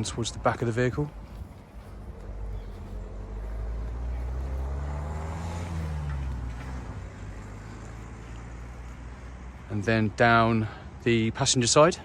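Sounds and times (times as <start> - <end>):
passing vehicle engine drone: 1.1 - 11.0.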